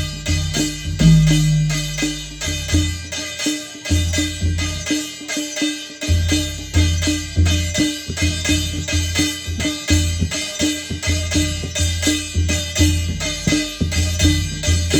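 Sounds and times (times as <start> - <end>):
deep drum booms: 0.0 - 2.9
metal plate ringing: 0.0 - 2.9
hand drums playing rhythm: 0.0 - 14.9.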